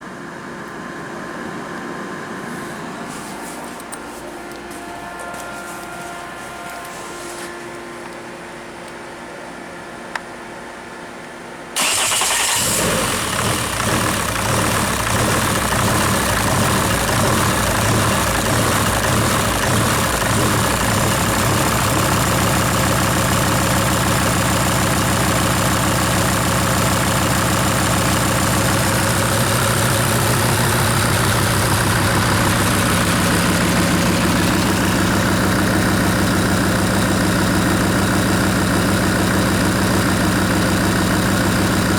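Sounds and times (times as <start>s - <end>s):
car engine cranking and idling: 11.8s - 41.9s.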